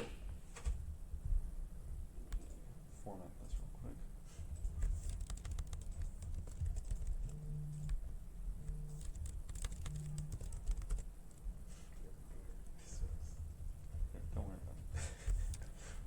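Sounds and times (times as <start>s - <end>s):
computer keyboard typing: 4.5s - 8.0s, 8.6s - 11.4s, 15.2s - 15.8s.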